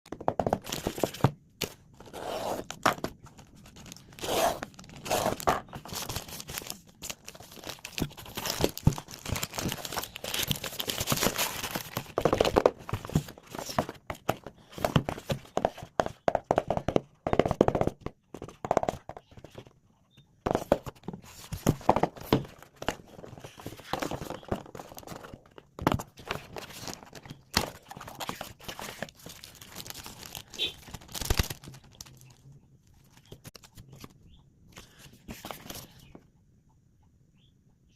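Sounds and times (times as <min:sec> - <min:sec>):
packaging crinkling and tearing: 0:00.6 - 0:13.9, 0:26.3 - 0:32.5.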